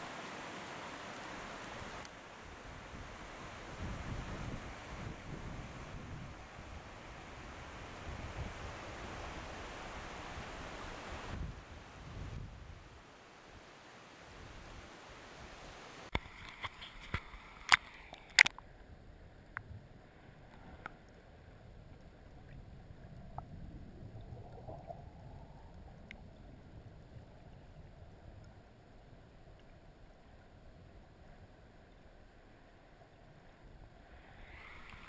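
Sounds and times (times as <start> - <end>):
creek water over rocks: 0.0 - 35.0.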